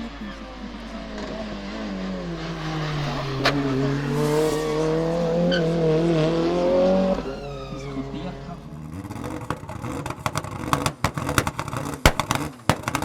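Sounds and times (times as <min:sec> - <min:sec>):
race car engine under load: 0:00.0 - 0:13.0
sharp crack: 0:07.2 - 0:13.0.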